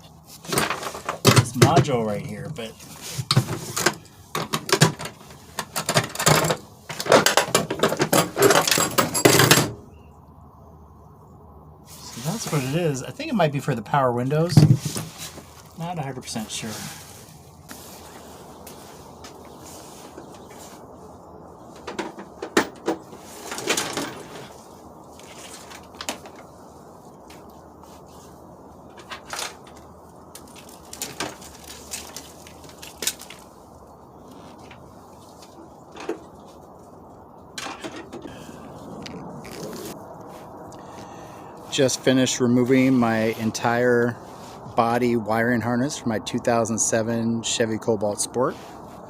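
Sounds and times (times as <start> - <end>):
rustle of wiring: 0.0 - 9.6, 11.8 - 45.1
clicks and knocks of parts: 0.4 - 1.9, 3.2 - 9.8, 28.9 - 33.5, 37.6 - 38.3.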